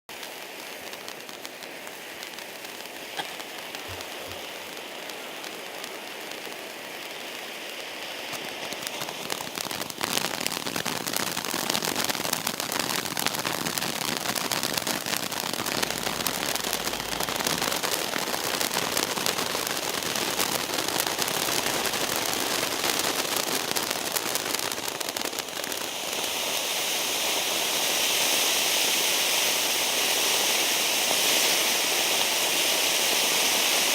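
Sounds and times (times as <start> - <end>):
dense crackling: 0.1 - 25.9
firework fountain hissing: 0.1 - 33.9.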